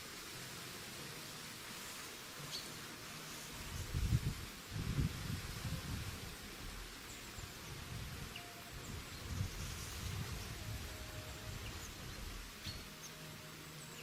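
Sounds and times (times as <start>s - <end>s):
mountain stream rushing: 0.0s - 14.0s
faint bird chirps: 7.0s - 14.0s.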